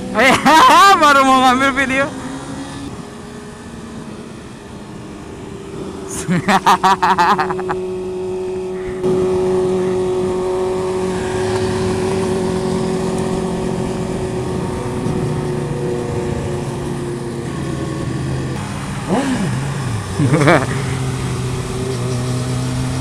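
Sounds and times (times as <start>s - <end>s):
motorcycle engine running: 3.2s - 23.0s.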